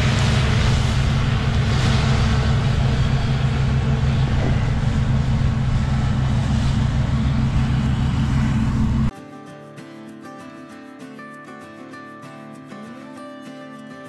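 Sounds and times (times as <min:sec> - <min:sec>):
diesel engine droning: 0:00.0 - 0:09.1.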